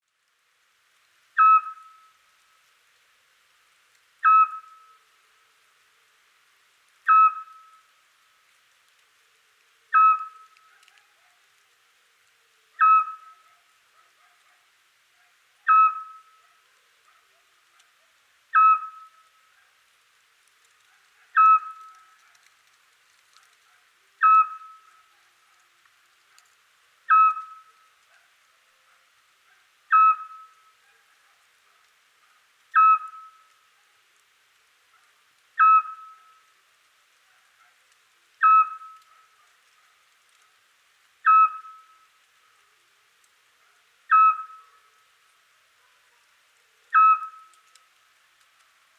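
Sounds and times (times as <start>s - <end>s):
owl whistled call: 1.4s - 2.1s, 4.2s - 5.0s, 7.1s - 7.8s, 9.9s - 10.6s, 12.8s - 13.6s, 15.6s - 16.4s, 18.5s - 19.3s, 21.3s - 22.1s, 24.2s - 25.1s, 27.1s - 27.8s, 29.9s - 30.7s, 32.7s - 33.5s, 35.6s - 36.4s, 38.4s - 39.2s, 41.2s - 42.0s, 44.1s - 44.9s, 46.9s - 47.5s.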